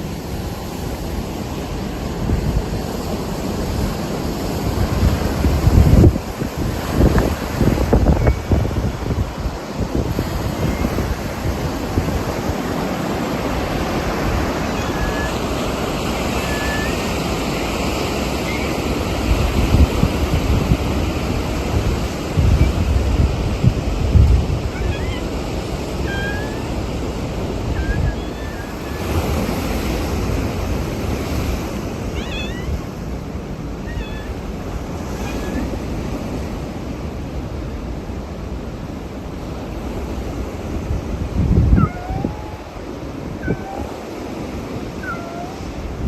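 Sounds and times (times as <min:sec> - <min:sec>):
strong wind buffeting microphone: 0:00.0 - 0:46.0
cats meowing: 0:14.0 - 0:17.8, 0:24.5 - 0:26.9, 0:27.6 - 0:29.2, 0:32.0 - 0:33.1, 0:33.8 - 0:35.8, 0:41.8 - 0:44.2, 0:44.9 - 0:45.8.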